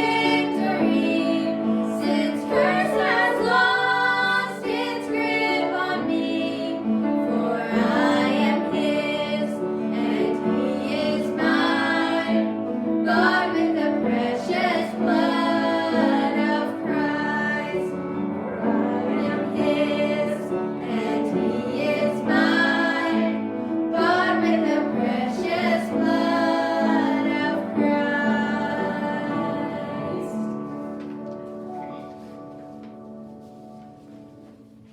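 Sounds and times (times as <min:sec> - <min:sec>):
instrumental accompaniment: 0:00.0 - 0:34.9.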